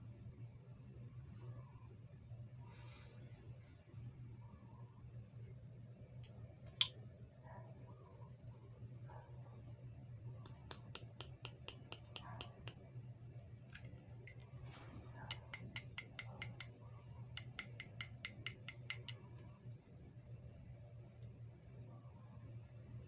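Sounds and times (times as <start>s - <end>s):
low steady hum: 0.0s - 23.0s
sharp plastic clicks: 15.3s - 19.2s.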